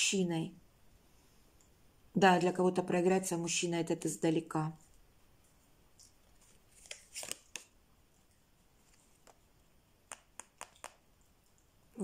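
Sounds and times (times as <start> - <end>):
cards flicking and sliding: 6.7 - 7.7.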